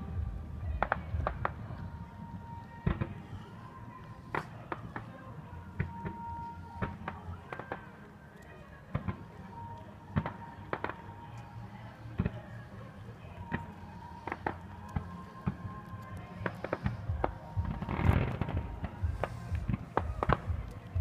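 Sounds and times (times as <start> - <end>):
fireworks bursting: 13.4 - 21.0.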